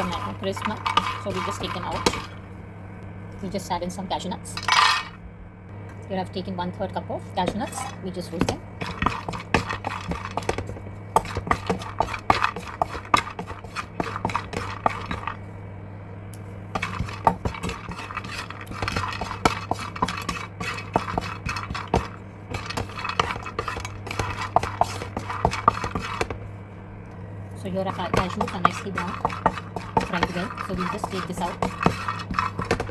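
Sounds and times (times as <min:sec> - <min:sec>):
spatula scraping a pan: 0:00.0 - 0:02.4, 0:08.8 - 0:15.4, 0:16.7 - 0:26.5, 0:27.8 - 0:32.9
steady low hum: 0:00.0 - 0:32.9.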